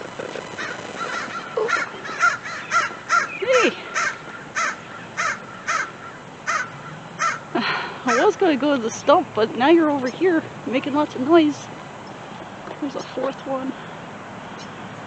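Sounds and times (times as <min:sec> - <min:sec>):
crows cawing: 0:00.5 - 0:08.4.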